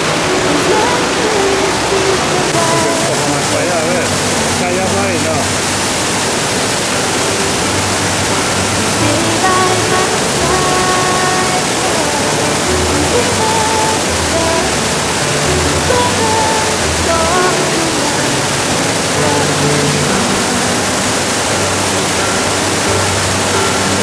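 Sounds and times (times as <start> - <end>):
faint melody of held notes: 0.0 - 24.0
waterfall rushing: 0.0 - 24.0.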